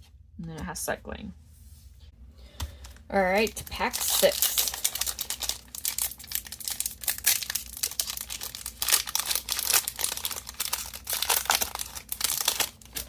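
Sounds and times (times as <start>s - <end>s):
foil wrapper tearing and crinkling: 3.2s - 13.0s.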